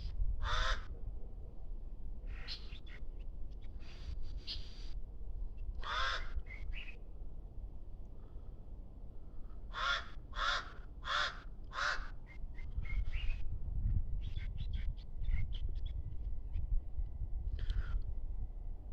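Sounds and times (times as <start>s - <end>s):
bird harsh raspy calls: 2.3s - 3.0s, 5.8s - 7.0s, 9.7s - 12.4s.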